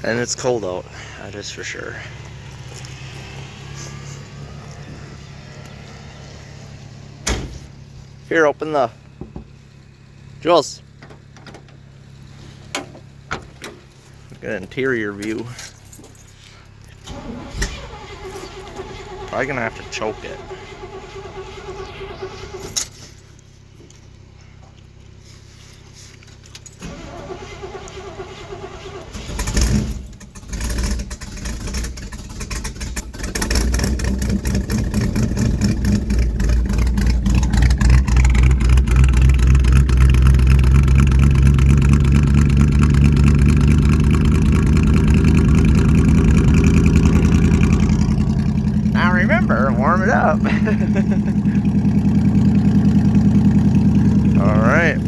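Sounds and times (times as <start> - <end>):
engine idling: 0.0 - 55.0
engine cranking: 16.9 - 23.2, 26.3 - 55.0.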